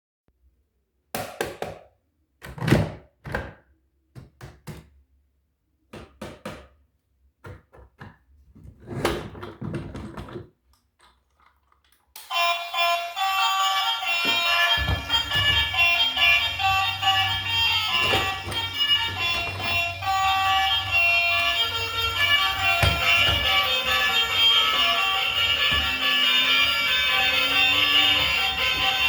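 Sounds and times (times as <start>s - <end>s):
music: 12.2s - 29.0s
toys and packaging thunking: 14.0s - 29.0s.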